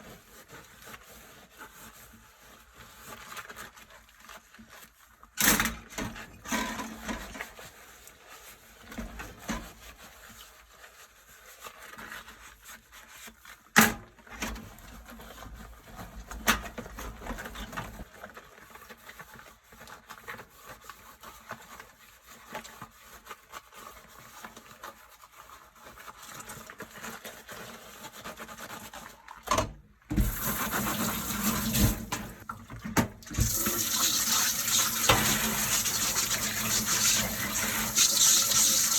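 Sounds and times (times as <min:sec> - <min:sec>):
tap water running: 0:30.1 - 0:38.9
rubber gloves rubbing: 0:30.2 - 0:32.4, 0:33.4 - 0:38.9.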